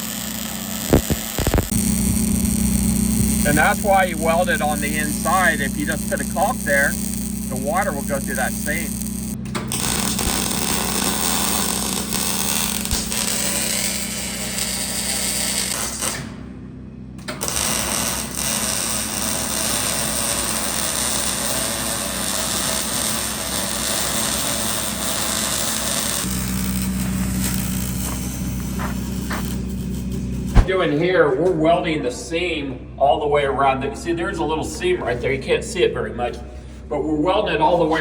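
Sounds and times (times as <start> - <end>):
electric arc welding crackle: 0.0 - 16.2, 17.4 - 30.8.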